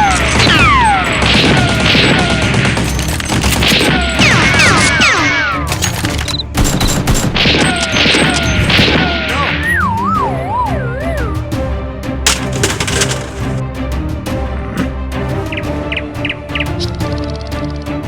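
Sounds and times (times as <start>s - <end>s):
rapid gunfire: 0.0s - 5.4s, 12.3s - 13.6s
action music: 0.0s - 17.7s
wailing siren: 9.5s - 11.5s.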